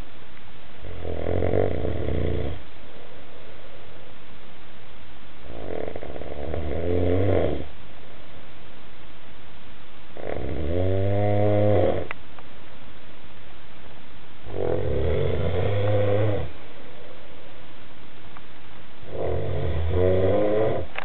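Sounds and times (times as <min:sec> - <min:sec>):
snoring: 0:00.8 - 0:02.6, 0:05.4 - 0:07.7, 0:10.2 - 0:12.1, 0:14.5 - 0:16.5, 0:19.0 - 0:21.0.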